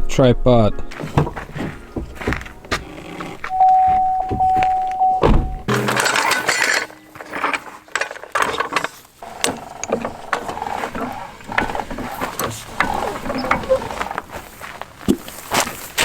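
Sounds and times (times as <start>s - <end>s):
metal clanks: 0.9s - 16.0s.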